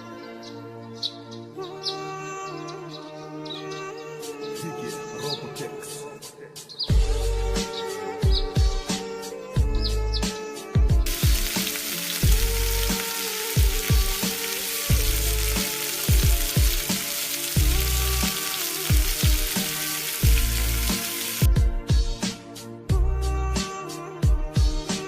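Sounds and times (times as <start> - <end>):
music with deep beat: 6.9 - 17.0, 17.6 - 25.0
crackling sizzle: 11.1 - 21.5.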